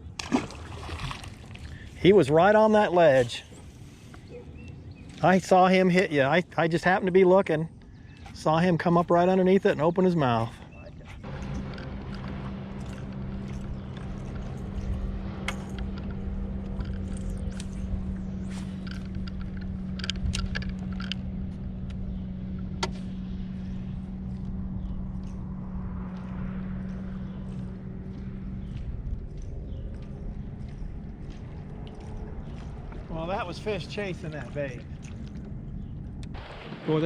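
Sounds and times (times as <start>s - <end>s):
boat motor humming: 0.0s - 37.0s
water and wind rumble: 0.0s - 37.0s
sharp clicks and knocks: 11.3s - 17.9s, 18.7s - 23.1s.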